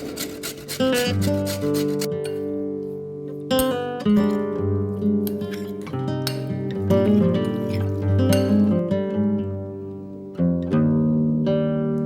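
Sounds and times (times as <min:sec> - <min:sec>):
acoustic guitar notes: 0:00.0 - 0:12.0.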